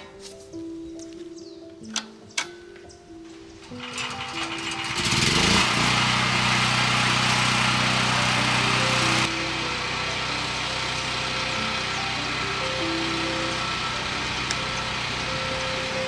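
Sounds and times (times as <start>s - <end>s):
background music: 0.0s - 16.0s
small motor spinning: 4.0s - 16.0s.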